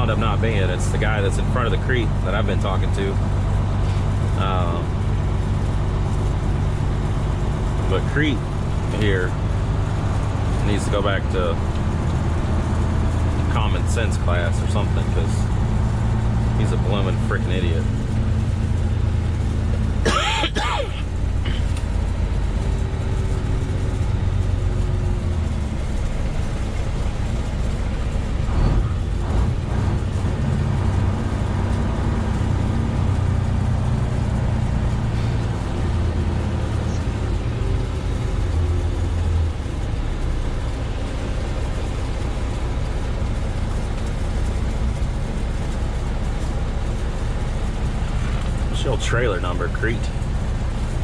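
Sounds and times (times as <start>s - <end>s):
diesel engine drone: 0.0s - 51.0s
road noise: 0.0s - 51.0s.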